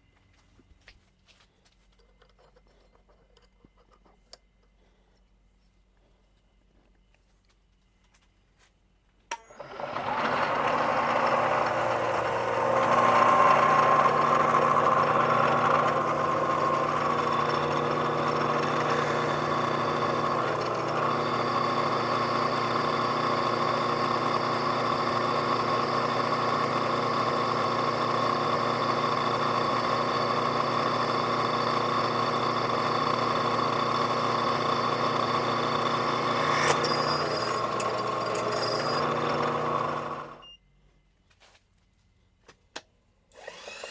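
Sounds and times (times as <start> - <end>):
milling machine hum and whine: 18.9 - 40.2.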